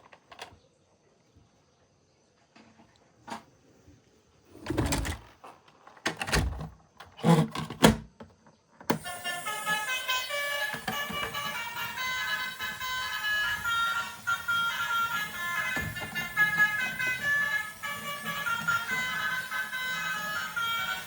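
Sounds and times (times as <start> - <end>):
electronic melody with held tones: 9.0 - 21.0.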